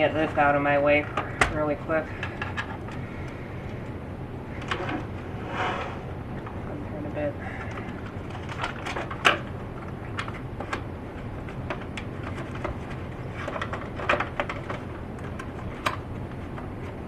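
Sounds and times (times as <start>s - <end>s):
steady low hum: 0.0s - 17.0s
plastic parts clicking: 2.2s - 3.8s, 11.6s - 17.0s.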